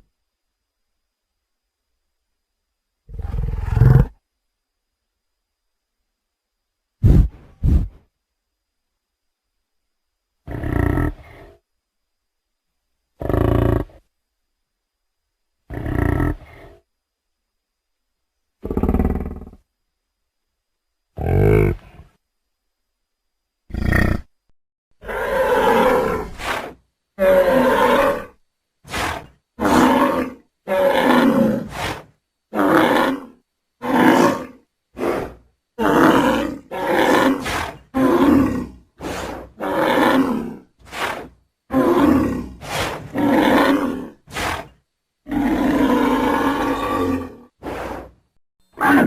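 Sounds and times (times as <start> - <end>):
cattle bellows and grunts: 48.8 - 49.0.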